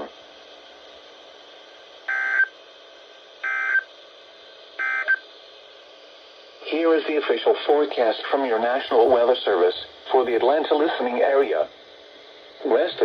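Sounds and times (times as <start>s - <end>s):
faint radio hiss: 0.0s - 13.0s
digital data tone bursts: 2.1s - 2.5s, 3.4s - 3.9s.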